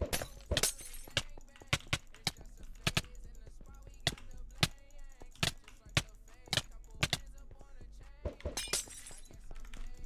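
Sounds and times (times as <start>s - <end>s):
mouse and keyboard clicking: 1.1s - 3.2s, 4.0s - 7.3s.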